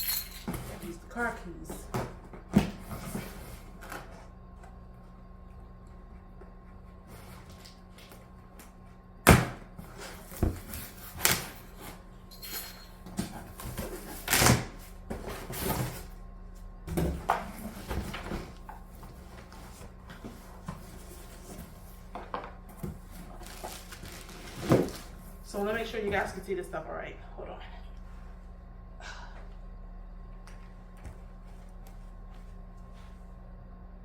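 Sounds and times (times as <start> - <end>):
packaging rustling and scraping: 22.7 - 25.9.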